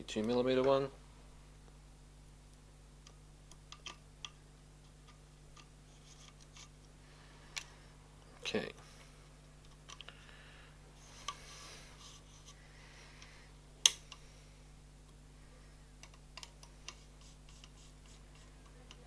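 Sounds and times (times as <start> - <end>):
hex driver clicks and taps: 16.0 - 17.8.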